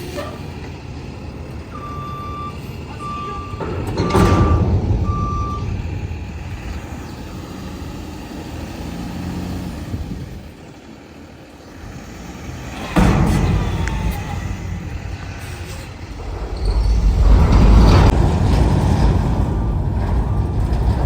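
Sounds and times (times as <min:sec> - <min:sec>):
truck reversing alarm beeping: 0:00.0 - 0:10.6
low engine rumble: 0:00.0 - 0:21.0.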